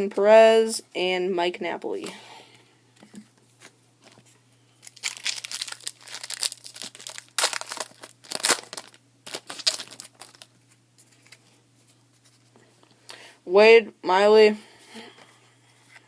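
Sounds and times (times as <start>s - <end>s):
wrapper tearing and crinkling: 4.8s - 10.6s.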